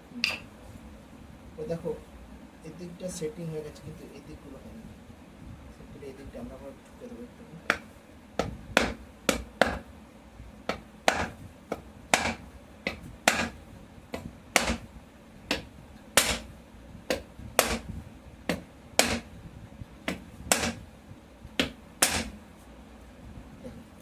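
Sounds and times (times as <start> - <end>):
hammer tapping on metal: 7.7 - 9.8, 10.7 - 13.6, 14.2 - 14.8, 15.5 - 16.5.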